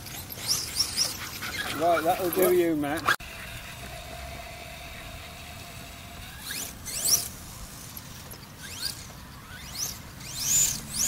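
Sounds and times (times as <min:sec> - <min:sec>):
electric motor whining: 0:03.0 - 0:07.7.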